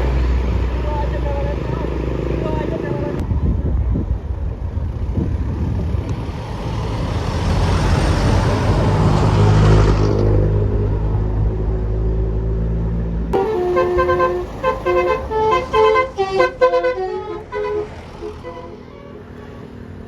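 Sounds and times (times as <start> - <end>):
large engine humming: 0.0 - 20.0
vehicle passing by: 4.7 - 20.0.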